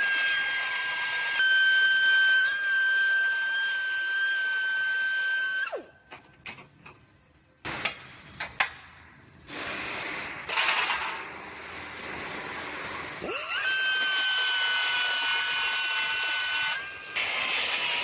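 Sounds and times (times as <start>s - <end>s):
high-pitched power tool whining: 0.0s - 5.9s, 13.2s - 18.0s.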